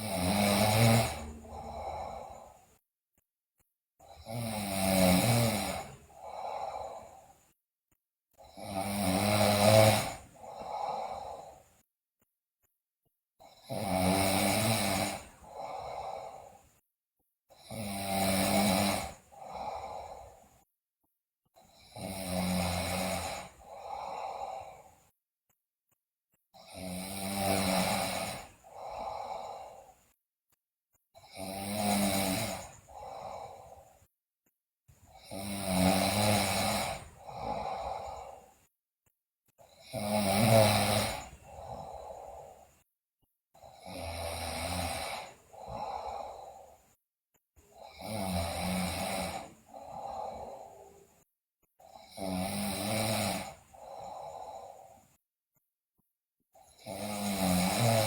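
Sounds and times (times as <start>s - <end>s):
girl snoring loudly: 0.0s - 2.6s, 4.1s - 7.4s, 8.4s - 11.8s, 13.4s - 16.6s, 17.5s - 20.5s, 21.6s - 25.0s, 26.6s - 30.0s, 31.2s - 34.0s, 35.1s - 38.6s, 39.6s - 42.8s, 43.6s - 47.0s, 47.7s - 51.2s, 51.8s - 55.0s, 56.6s - 58.0s.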